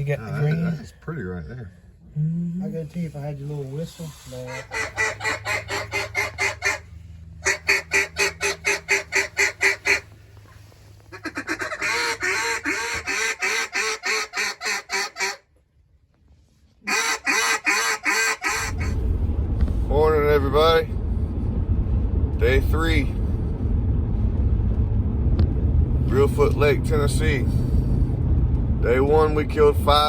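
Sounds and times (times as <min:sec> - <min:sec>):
low steady hum: 0:00.0 - 0:13.8, 0:18.5 - 0:30.0
duck call quacking: 0:04.5 - 0:10.2, 0:11.1 - 0:15.5, 0:16.8 - 0:18.9.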